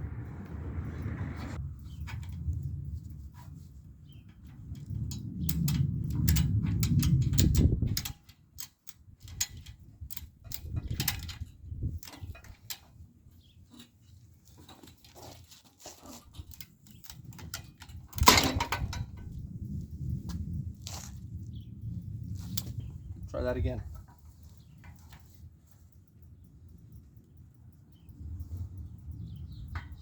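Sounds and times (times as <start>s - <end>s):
low rumble: 0.0s - 8.2s
metal clatter: 1.8s - 21.2s
ratchet strap clicks and knocks: 1.8s - 21.3s.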